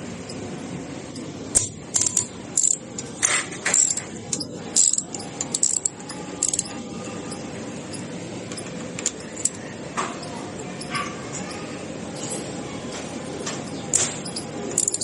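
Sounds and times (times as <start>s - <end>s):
metal tools clinking: 1.6s - 11.6s, 13.2s - 15.0s.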